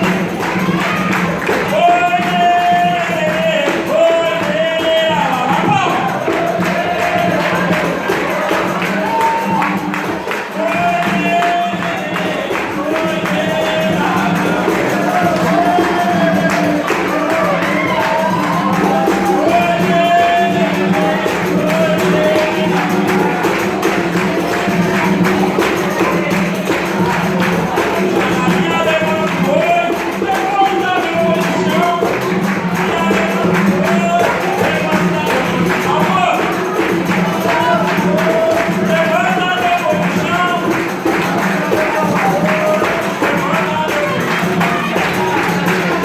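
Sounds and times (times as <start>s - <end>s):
percussion: 0.0s - 46.0s
person singing: 0.0s - 46.0s
tambourine jingling: 0.0s - 46.0s.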